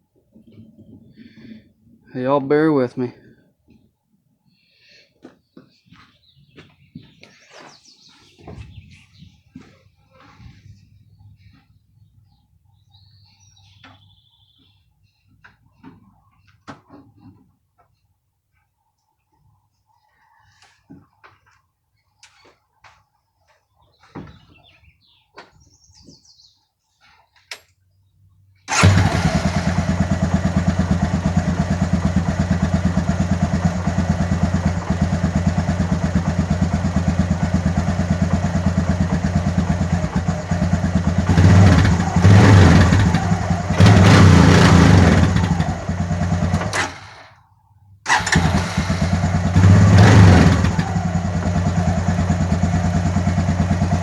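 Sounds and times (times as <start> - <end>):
atv engine starting and revving: 28.7 - 47.4, 48.1 - 54.0.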